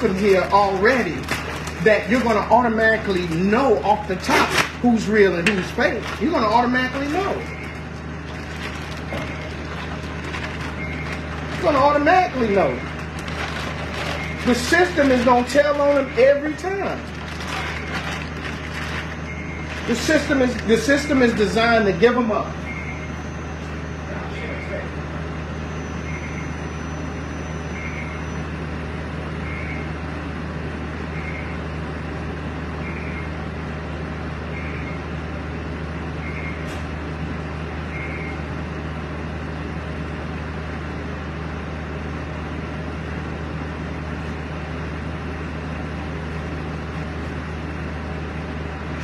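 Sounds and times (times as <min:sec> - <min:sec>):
low mechanical hum with hiss: 0:00.0 - 0:49.0.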